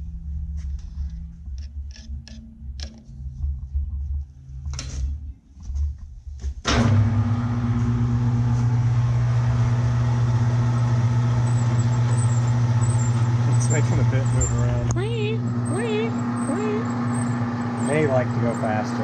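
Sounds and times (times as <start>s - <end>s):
metal lathe humming: 6.8s - 19.0s.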